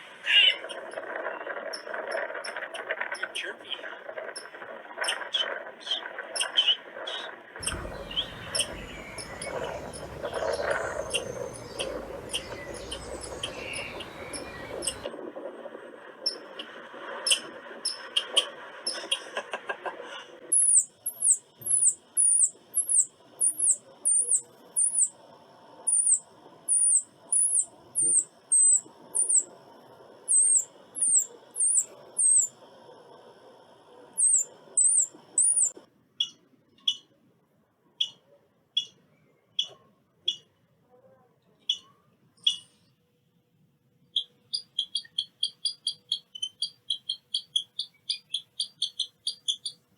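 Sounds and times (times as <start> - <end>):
hissy background: 0.0 - 36.1
squirrel chirping: 4.4 - 15.1, 16.2 - 19.4, 20.5 - 37.1, 38.0 - 40.5, 41.7 - 42.8, 44.1 - 49.9.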